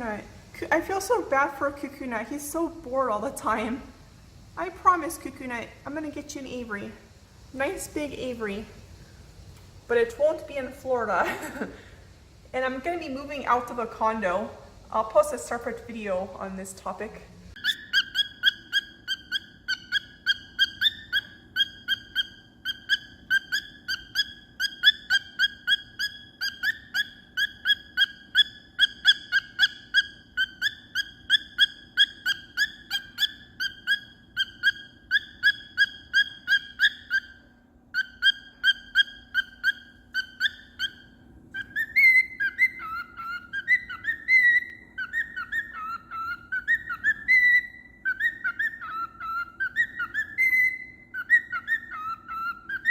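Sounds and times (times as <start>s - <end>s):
cockatiel whistling: 17.5s - 52.9s.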